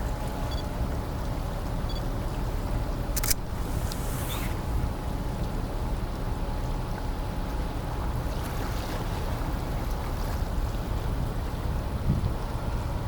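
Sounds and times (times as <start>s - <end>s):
ship engines rumbling: 0.0s - 7.8s
wind and water noise: 0.0s - 13.0s.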